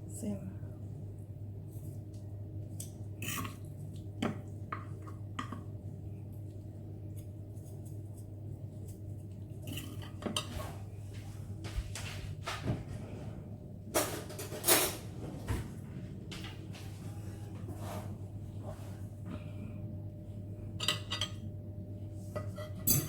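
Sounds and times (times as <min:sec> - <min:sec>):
steady low hum: 0:00.0 - 0:23.0
utensils clinking against a bowl: 0:09.6 - 0:10.6, 0:14.0 - 0:15.1, 0:20.8 - 0:21.5, 0:22.4 - 0:23.0.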